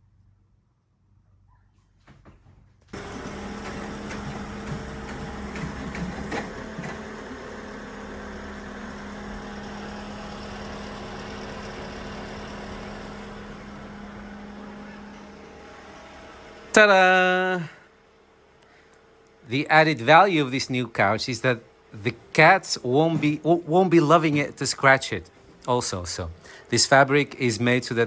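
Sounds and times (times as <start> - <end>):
knocks: 2.1 - 7.2
furniture lift engine running: 2.9 - 28.0.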